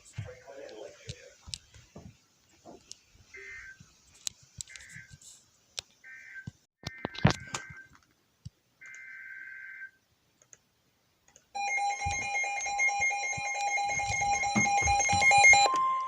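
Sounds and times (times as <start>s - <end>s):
two-tone alert signal: 11.6s - 16.0s.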